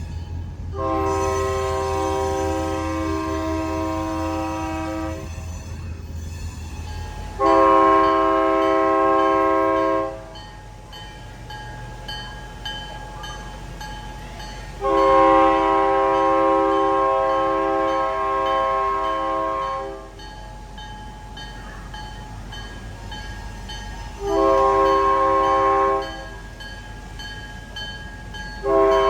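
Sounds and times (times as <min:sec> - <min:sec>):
locomotive air horn blasts: 0:00.7 - 0:05.4, 0:07.4 - 0:10.4, 0:14.8 - 0:20.2, 0:24.2 - 0:26.4, 0:28.6 - 0:29.0.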